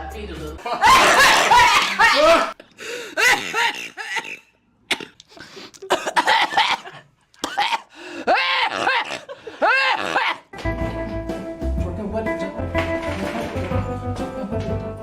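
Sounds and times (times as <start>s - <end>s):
music: 0.0s - 0.6s, 10.6s - 15.0s
woman coughing: 5.9s - 7.9s.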